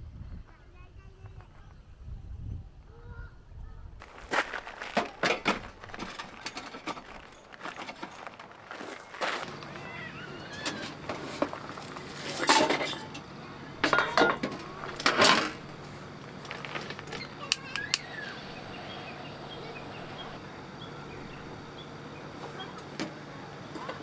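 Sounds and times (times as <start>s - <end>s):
cookware clattering and clinking: 9.8s - 15.8s.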